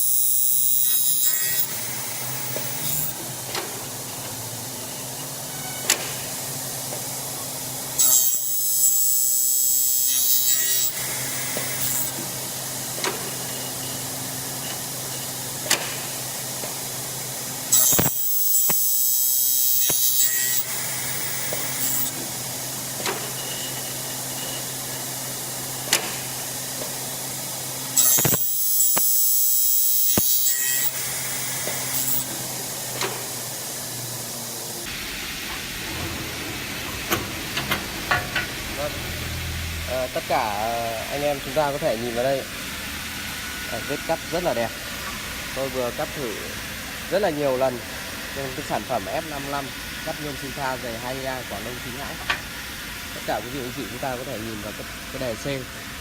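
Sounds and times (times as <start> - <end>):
saw cutting through aluminium: 0.0 - 3.5, 7.4 - 25.6, 27.0 - 35.0
cutting saw humming: 0.0 - 35.7
short clicks: 17.8 - 18.8.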